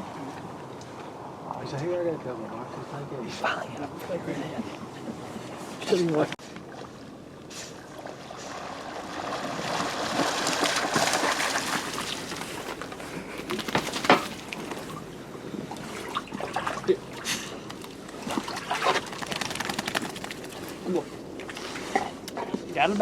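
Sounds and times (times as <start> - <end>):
water sloshing and splashing: 6.4 - 22.0.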